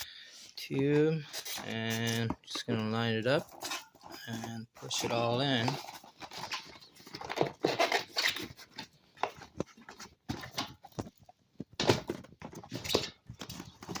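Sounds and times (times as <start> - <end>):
rubber rubbing and squeaking: 1.2 - 8.8.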